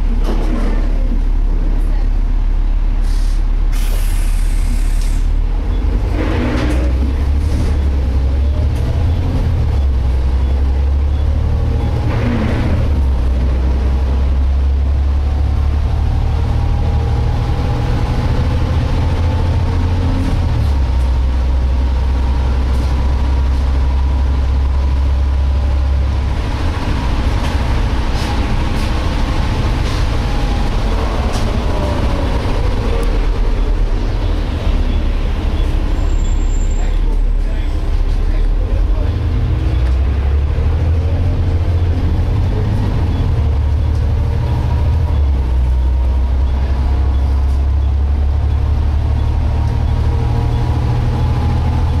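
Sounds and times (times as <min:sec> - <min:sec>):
bus diesel engine running: 0:00.0 - 0:52.0.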